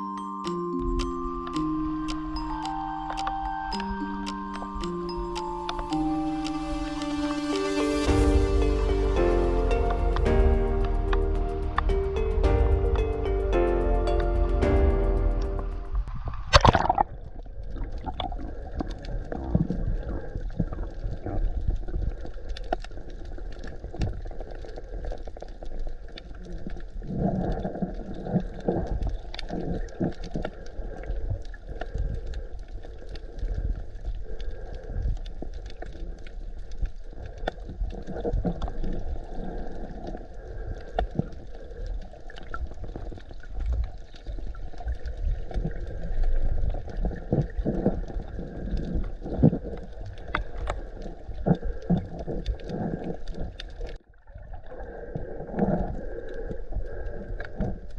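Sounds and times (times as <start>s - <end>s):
small irregular clicks: 0.4s - 7.4s.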